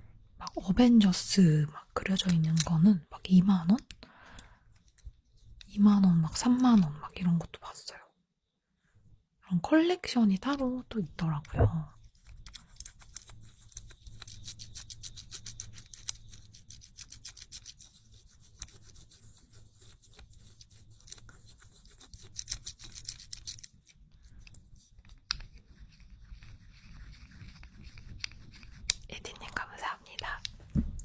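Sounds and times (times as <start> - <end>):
fidget toy clicks and scratches: 2.2 - 2.9, 12.0 - 29.2.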